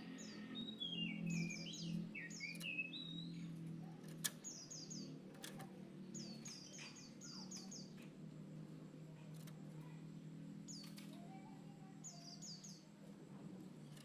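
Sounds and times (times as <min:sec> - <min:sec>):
faint low hum: 0:00.0 - 0:14.0
bird singing whistled notes: 0:00.6 - 0:03.4.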